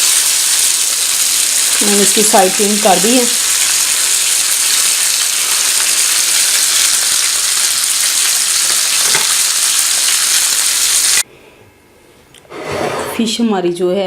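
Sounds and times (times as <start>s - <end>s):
fish sizzling in oil: 0.0s - 11.2s.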